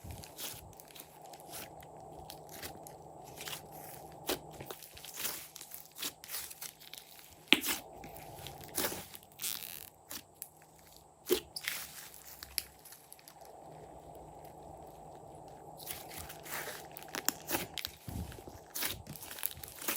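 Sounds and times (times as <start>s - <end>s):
slime squished by hand: 7.5s - 10.2s, 15.8s - 19.9s.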